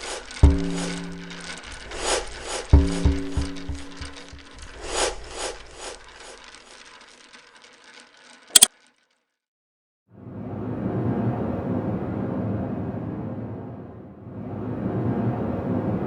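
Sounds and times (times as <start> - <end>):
mechanical ratcheting: 0.0 - 9.2.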